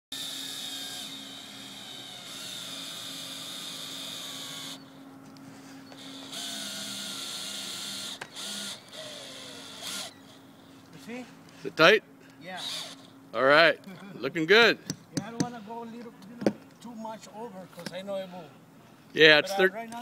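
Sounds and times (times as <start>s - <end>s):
power drill whining: 0.1s - 4.9s, 5.8s - 10.4s.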